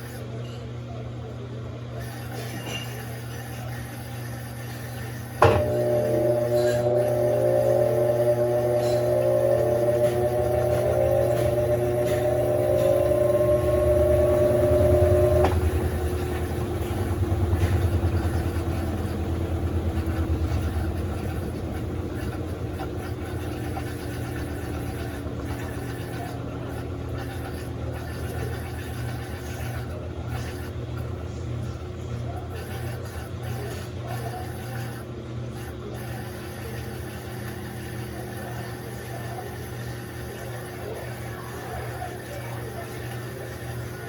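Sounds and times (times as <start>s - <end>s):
washing machine motor whine: 0.0s - 1.0s, 1.6s - 44.0s
low hum: 5.4s - 21.9s.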